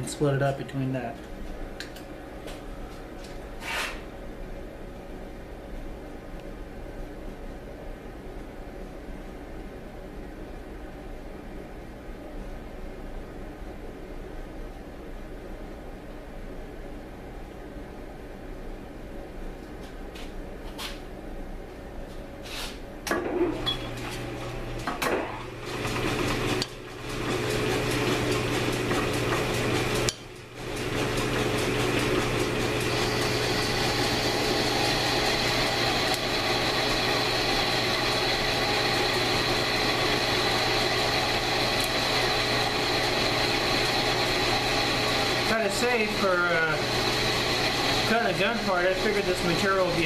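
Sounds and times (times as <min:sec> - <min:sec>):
lathe cutting metal: 0:25.7 - 0:50.0.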